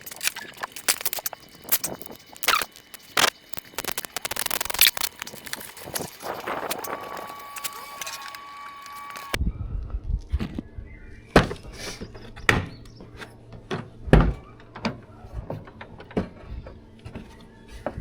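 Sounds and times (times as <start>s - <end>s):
faint steady whine: 0.0s - 9.4s
hand tools clicking and scraping: 0.0s - 9.4s.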